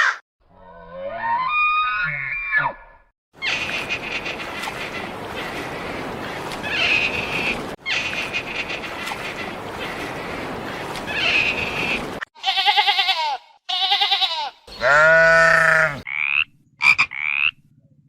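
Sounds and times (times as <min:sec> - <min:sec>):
animal calling: 0:13.7 - 0:17.6.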